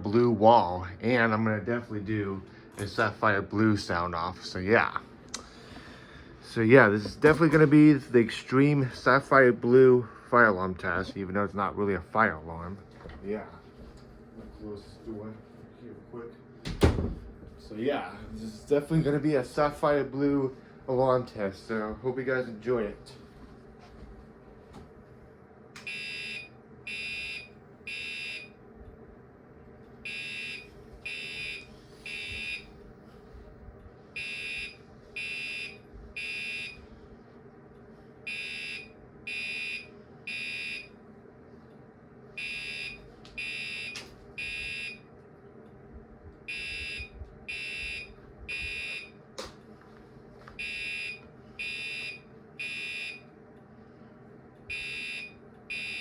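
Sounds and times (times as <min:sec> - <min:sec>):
fire alarm horn buzzy blasts: 0:25.8 - 0:28.6, 0:30.1 - 0:32.7, 0:34.2 - 0:36.8, 0:38.3 - 0:40.9, 0:42.4 - 0:45.0, 0:46.5 - 0:49.2, 0:50.6 - 0:53.2, 0:54.7 - 0:56.0.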